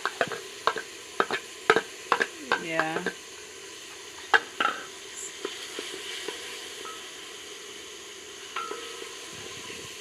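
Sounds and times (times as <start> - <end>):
utensil knocking against pot: 0.0 - 3.2, 8.6 - 9.0
food sizzling in oil: 0.0 - 10.0.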